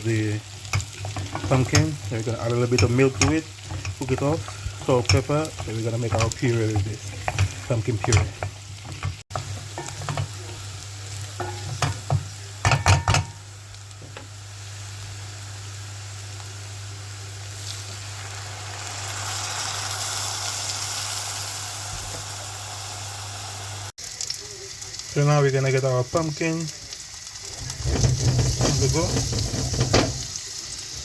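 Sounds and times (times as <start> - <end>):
food sizzling in pan: 0.0 - 31.0
utensil stirring and knocking pan: 0.4 - 14.3, 27.5 - 30.5.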